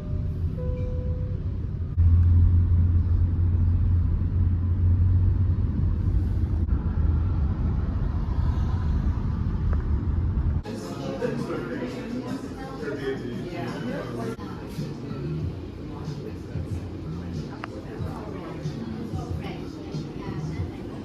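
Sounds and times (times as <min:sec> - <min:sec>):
car interior rumble: 0:00.0 - 0:10.6.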